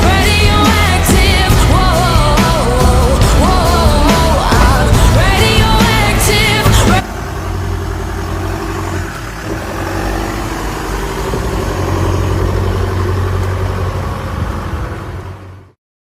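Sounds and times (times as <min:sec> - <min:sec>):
music: 0:00.0 - 0:07.0
vehicle engine humming: 0:00.0 - 0:15.8.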